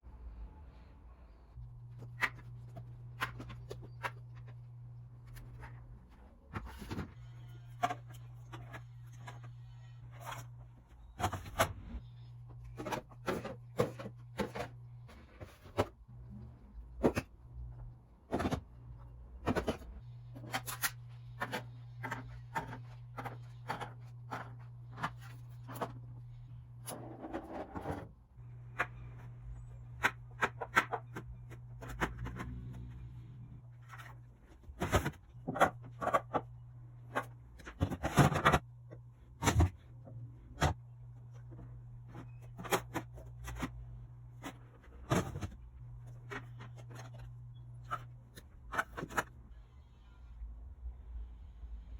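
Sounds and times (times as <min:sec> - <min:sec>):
refrigerator hum: 0:00.0 - 0:51.9
food containers being handled: 0:01.8 - 0:07.1, 0:12.5 - 0:16.0, 0:19.4 - 0:26.2, 0:27.2 - 0:33.0, 0:33.6 - 0:39.8, 0:40.6 - 0:49.4.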